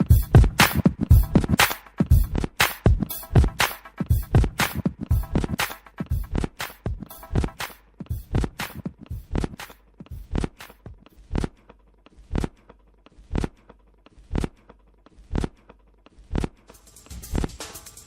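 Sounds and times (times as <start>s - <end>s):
percussive background music: 0.0s - 11.4s, 16.7s - 18.0s.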